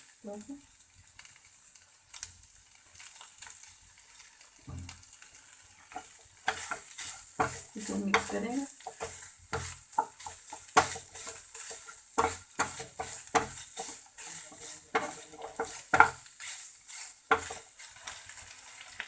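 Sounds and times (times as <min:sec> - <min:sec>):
faint sizzle: 0:00.0 - 0:19.0
spoon scraping a pan: 0:05.5 - 0:19.0.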